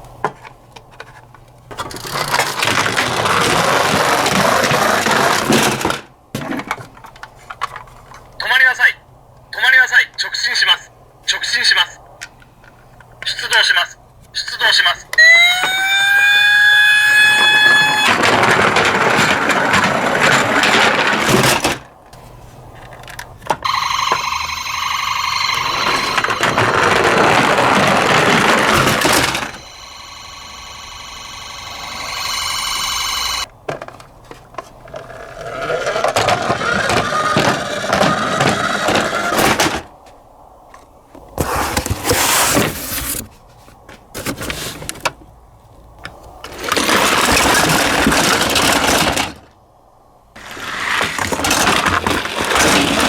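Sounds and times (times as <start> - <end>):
electronic ambulance siren: 13.6 - 18.4, 23.6 - 33.5.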